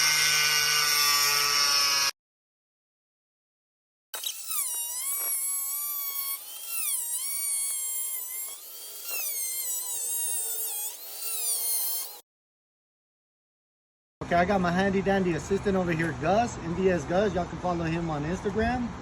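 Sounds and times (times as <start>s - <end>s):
rotary cutting tool whining: 0.0s - 2.2s, 4.2s - 12.2s.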